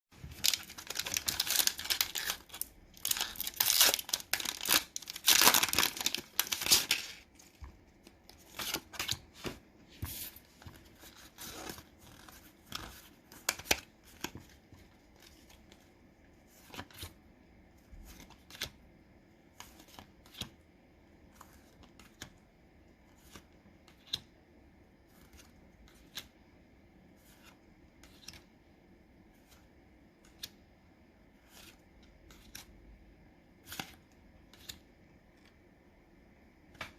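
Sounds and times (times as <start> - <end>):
foil wrapper crinkling and tearing: 0.3 - 7.2
cards clicking and sliding: 27.2 - 28.5.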